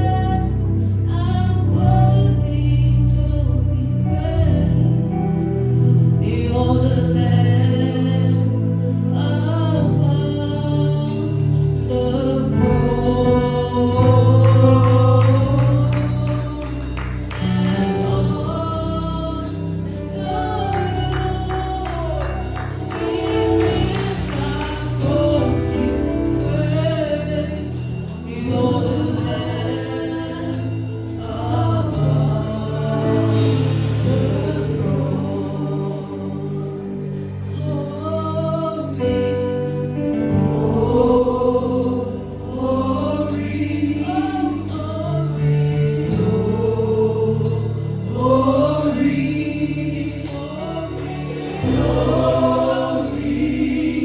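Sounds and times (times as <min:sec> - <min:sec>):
group singing gospel: 0:00.0 - 0:54.0
low bass notes: 0:00.0 - 0:54.0
percussion hits: 0:13.2 - 0:18.5, 0:20.3 - 0:29.2.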